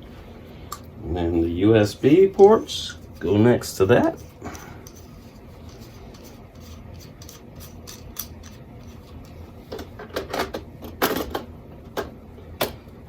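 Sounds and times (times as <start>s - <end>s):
light rubbing of small parts: 0.7s - 10.3s
small parts clicking: 5.7s - 9.4s.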